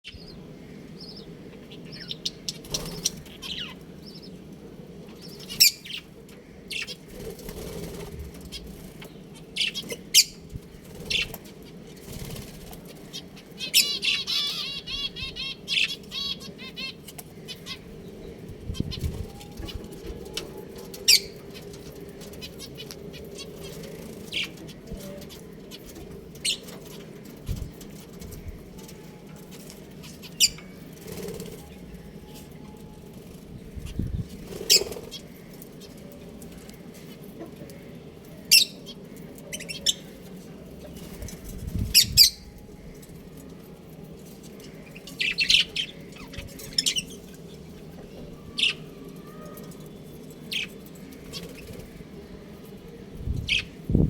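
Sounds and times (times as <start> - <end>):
budgerigars chirping: 13.1 - 17.8.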